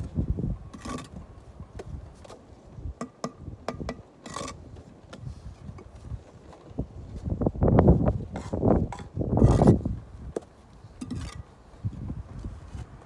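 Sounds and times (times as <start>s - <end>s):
trowel scraping mortar: 0.7s - 1.2s, 4.2s - 5.8s, 8.1s - 10.0s, 11.0s - 11.5s.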